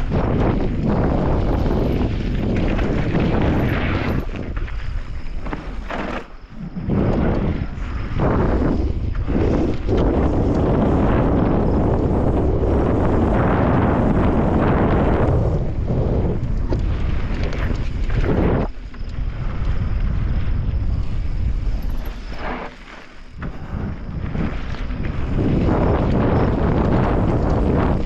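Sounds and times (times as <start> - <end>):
wind buffeting microphone: 0.0 - 5.8, 6.4 - 28.0
bike tyre rumble on dirt: 0.0 - 28.0
bike knocks and rattles: 0.2 - 6.4.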